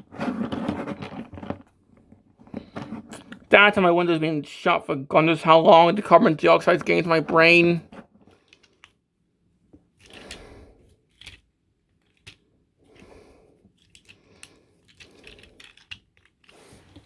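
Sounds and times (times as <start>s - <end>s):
plastic toy clicking and rattling: 10.0s - 10.4s, 11.1s - 12.4s, 13.7s - 17.0s.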